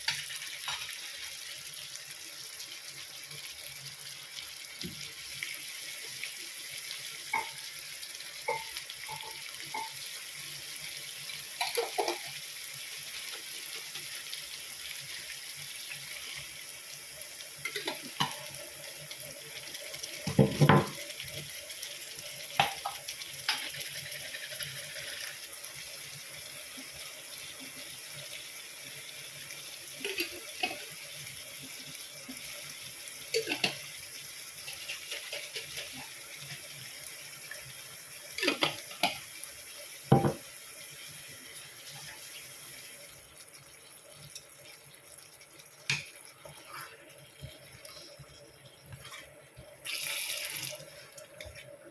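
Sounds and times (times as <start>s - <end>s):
tap water running into sink: 8.4s - 10.0s, 11.6s - 12.4s, 17.6s - 18.6s, 20.0s - 21.2s, 22.4s - 25.5s, 38.3s - 39.3s, 40.1s - 40.5s, 49.8s - 51.6s
dishes clinking and knocking: 8.5s - 10.0s, 11.6s - 12.3s, 20.2s - 21.0s, 40.1s - 40.4s.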